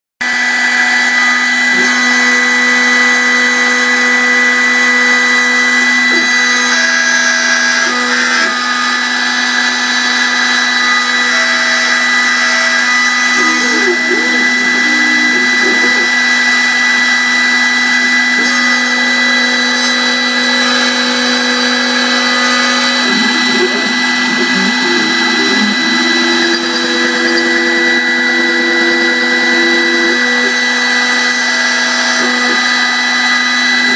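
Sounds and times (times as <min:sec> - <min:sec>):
milling machine spindle whine: 0:00.2 - 0:33.9.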